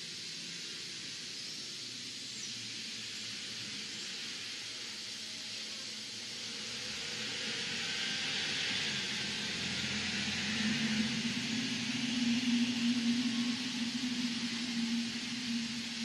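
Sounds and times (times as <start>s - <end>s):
steady hiss: 0.0s - 16.0s.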